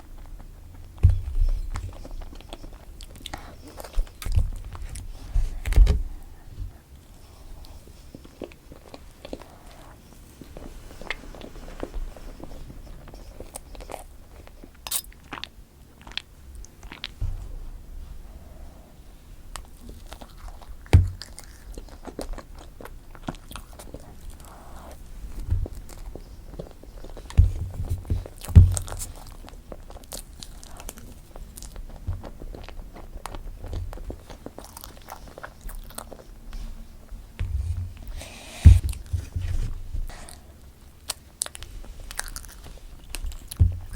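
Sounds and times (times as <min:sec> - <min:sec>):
cake being chewed: 0:00.0 - 0:43.9
low thumps: 0:37.4 - 0:40.1.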